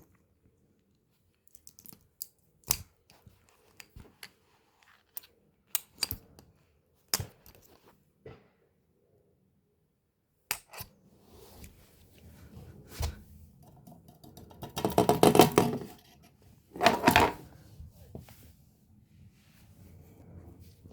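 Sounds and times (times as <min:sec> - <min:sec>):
hard objects clinking and clattering: 0:13.8 - 0:16.0, 0:16.8 - 0:17.4.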